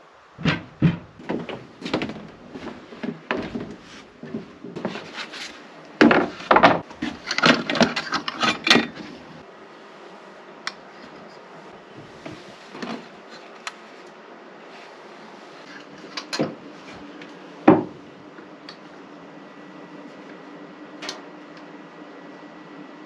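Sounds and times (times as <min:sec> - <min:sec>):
wood knocking and scraping: 0:00.4 - 0:09.4, 0:17.7 - 0:18.0.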